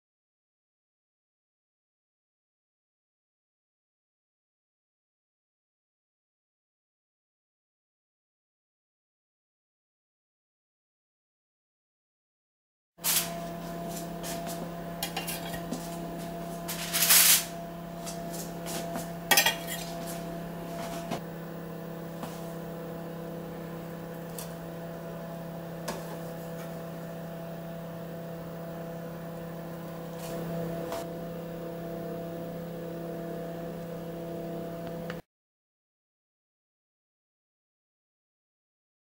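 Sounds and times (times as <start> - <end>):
steady mechanical hum: 13.0 - 35.2
utensils and crockery clattering: 15.0 - 15.8, 19.3 - 20.1.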